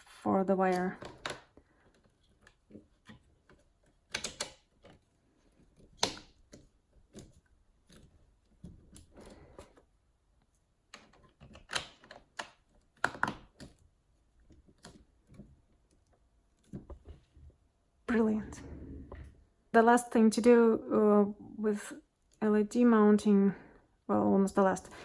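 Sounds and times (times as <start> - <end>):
plastic pieces clicking and knocking: 0.6 - 5.1, 10.9 - 13.8
plastic sharp snaps: 5.9 - 7.3.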